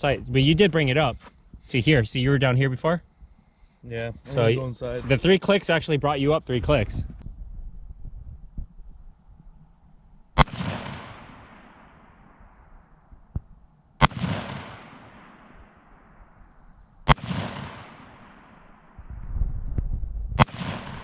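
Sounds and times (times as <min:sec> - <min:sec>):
rifle shots with echo: 0:10.4 - 0:12.4, 0:14.0 - 0:16.2, 0:17.1 - 0:19.0, 0:20.4 - 0:21.0.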